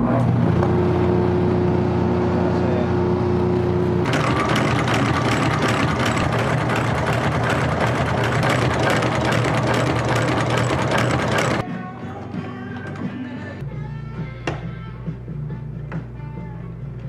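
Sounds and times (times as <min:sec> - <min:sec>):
machine motor humming: 0:00.5 - 0:11.6.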